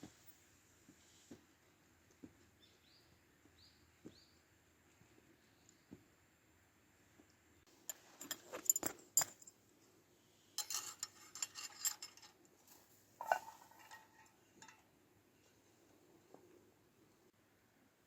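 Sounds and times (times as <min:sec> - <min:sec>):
cutlery and tableware clinking: 0:07.8 - 0:09.5, 0:10.6 - 0:12.4, 0:13.2 - 0:14.8.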